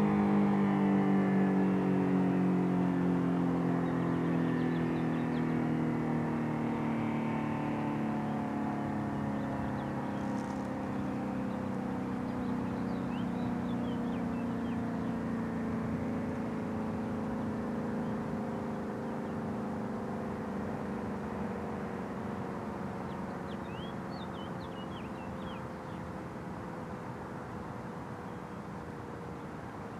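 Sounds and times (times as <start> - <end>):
warning siren winding down: 0.0 - 23.1
small birds chirping: 3.8 - 7.0, 8.2 - 26.8.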